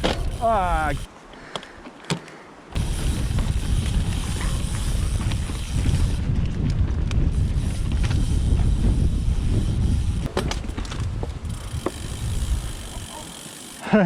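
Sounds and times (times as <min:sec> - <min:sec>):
light bike rattles: 0:00.0 - 0:01.6, 0:02.7 - 0:14.0
wind rushing over microphone: 0:02.7 - 0:13.2.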